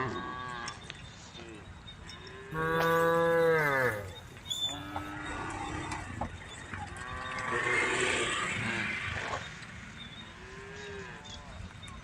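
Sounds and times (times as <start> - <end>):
cows mooing: 2.5 - 6.1.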